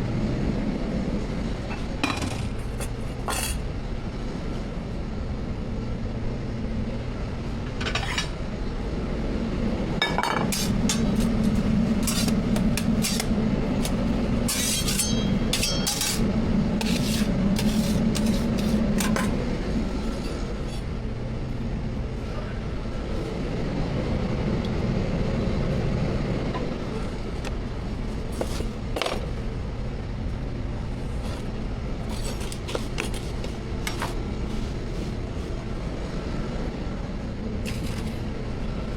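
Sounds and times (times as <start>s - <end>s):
metal utensils clinking: 14.5s - 16.2s.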